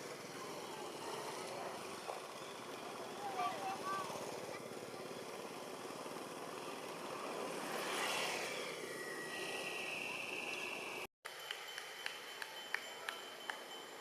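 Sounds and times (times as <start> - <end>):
small engine running: 0.0 - 11.1.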